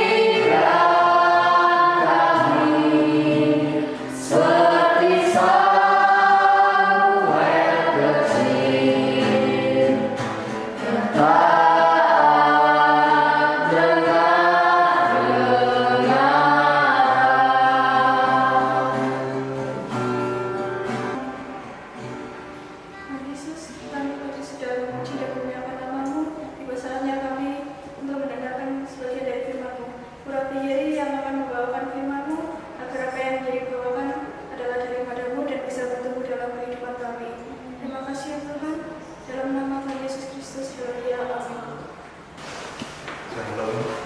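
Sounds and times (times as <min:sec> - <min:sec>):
group singing worship song: 0:00.0 - 0:20.3.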